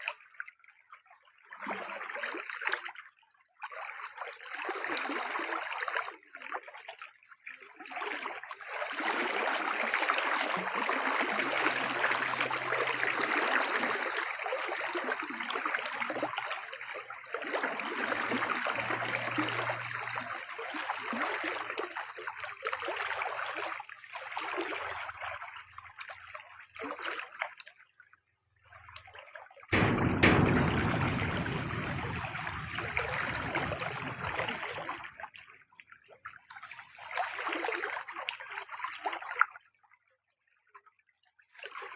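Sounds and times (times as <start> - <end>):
water splashing: 7.9 - 25.6, 29.8 - 35.3
water running and trickling: 9.0 - 22.2, 29.8 - 35.1.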